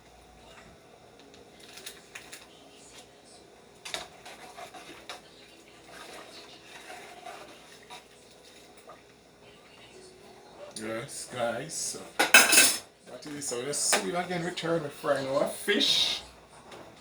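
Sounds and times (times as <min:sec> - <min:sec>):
utensil clinking against pot: 0:12.2 - 0:12.9.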